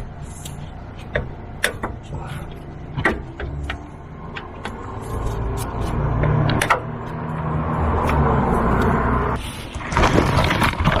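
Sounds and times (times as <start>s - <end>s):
low mechanical hum: 0.0s - 9.7s.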